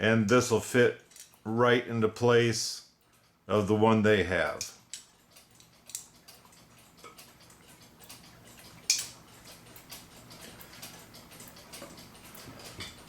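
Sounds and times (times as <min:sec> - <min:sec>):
small metal parts clicking: 0:01.0 - 0:01.5, 0:04.5 - 0:13.0.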